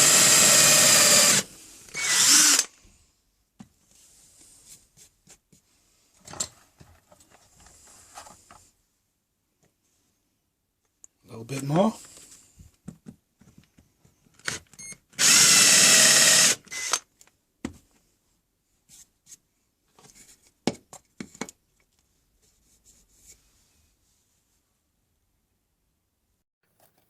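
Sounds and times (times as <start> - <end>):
power drill boring into wood: 0.0 - 2.7, 14.4 - 17.0
knocks and clicks handling wood: 12.6 - 14.4, 19.9 - 21.9.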